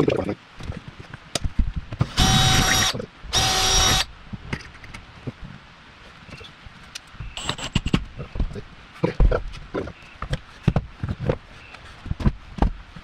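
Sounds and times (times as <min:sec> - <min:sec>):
power drill driving screw into wood: 0:02.0 - 0:04.1.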